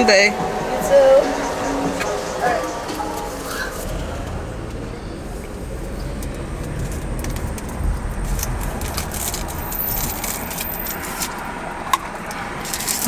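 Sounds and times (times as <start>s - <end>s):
car rumble from inside cabin: 0.0s - 13.0s.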